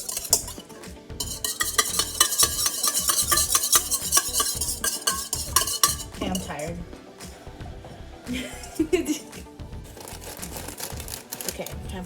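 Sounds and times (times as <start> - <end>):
utensil scraping a mixing bowl: 0.0 - 6.7, 9.9 - 11.8.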